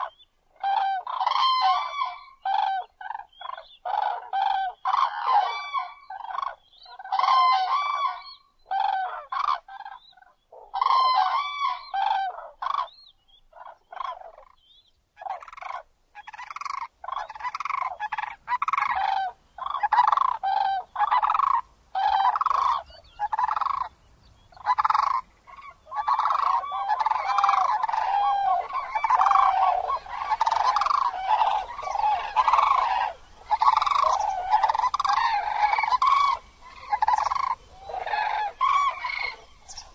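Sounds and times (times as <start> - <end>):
cranes honking: 26.0 - 39.9.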